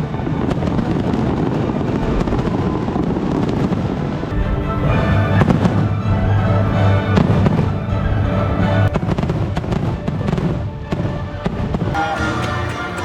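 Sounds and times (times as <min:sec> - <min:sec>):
loud show music: 0:12.0 - 0:13.0.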